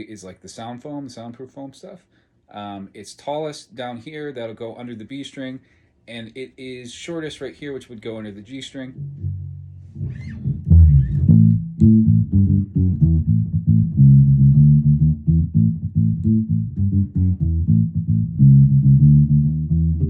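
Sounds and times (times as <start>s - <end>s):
muted electric bass plucked notes: 8.8s - 20.0s.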